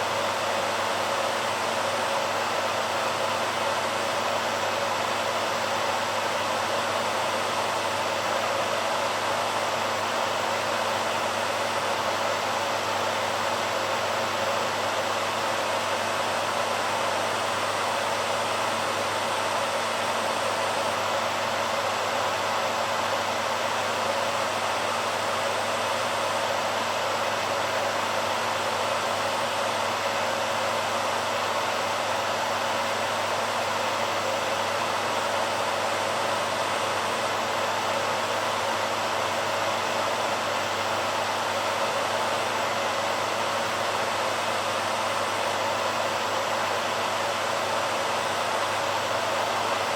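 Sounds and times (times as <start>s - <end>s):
hairdryer blowing air: 0.0s - 49.9s.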